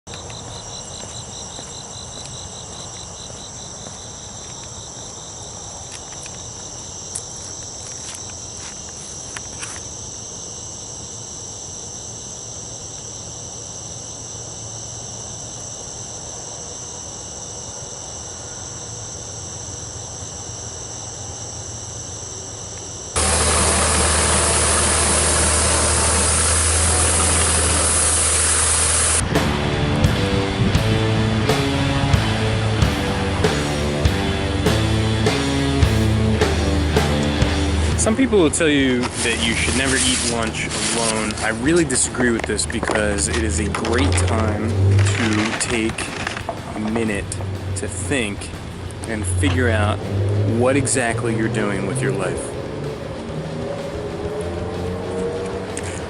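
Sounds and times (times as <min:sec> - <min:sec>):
crickets chirping: 0:00.0 - 0:56.0
rushing noise with deep rumble: 0:23.2 - 0:33.5, 0:35.9 - 0:56.0
low hum: 0:23.2 - 0:56.0.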